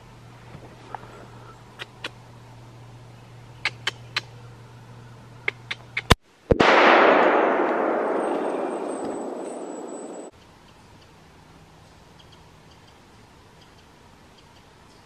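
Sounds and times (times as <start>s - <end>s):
sharp clicks: 5.5s - 6.2s
rifle shot echoing: 6.5s - 10.3s.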